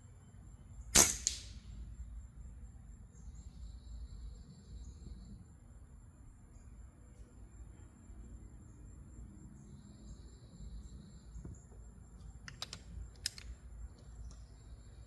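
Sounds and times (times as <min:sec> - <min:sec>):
air rifle mechanical clicks: 0:01.0 - 0:01.6, 0:12.4 - 0:13.6.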